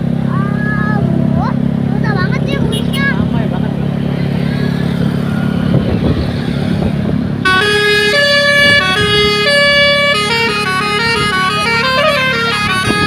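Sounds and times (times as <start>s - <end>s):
low engine rumble: 0.0s - 13.0s
musical air horn playing a tune: 7.4s - 13.0s.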